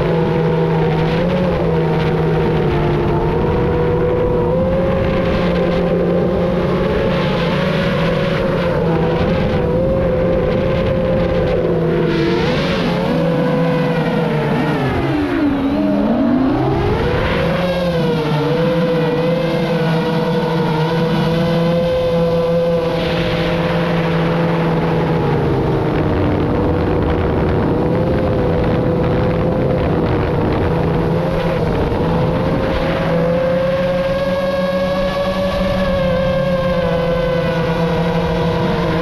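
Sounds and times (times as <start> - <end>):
drone motors whining: 0.0 - 39.0
wind rushing: 9.2 - 18.2.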